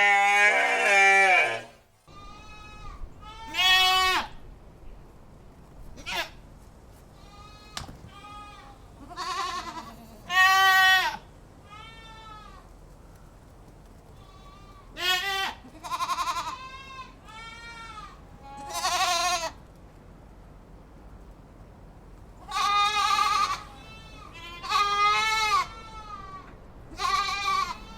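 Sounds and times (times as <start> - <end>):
goats bleating: 0.0 - 4.3, 7.2 - 12.6, 14.2 - 19.6, 22.4 - 27.9.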